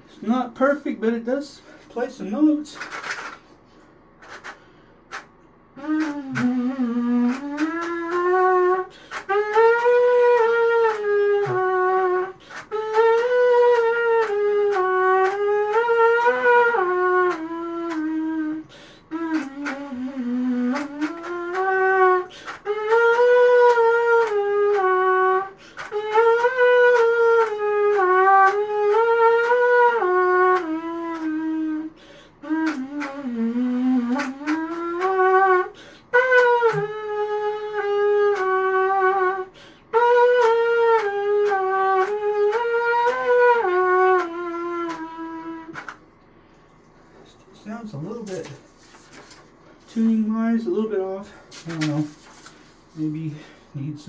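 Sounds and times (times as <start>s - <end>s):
trumpet playing slow melody: 5.7s - 45.8s.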